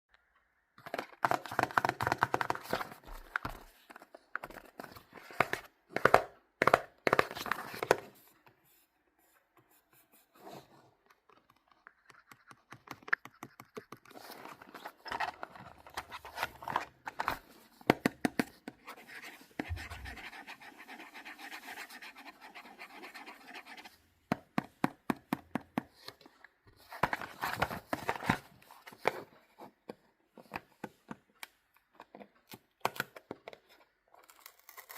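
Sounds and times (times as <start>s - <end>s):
hands rustling toy packaging: 0.8s - 8.4s, 11.0s - 22.2s.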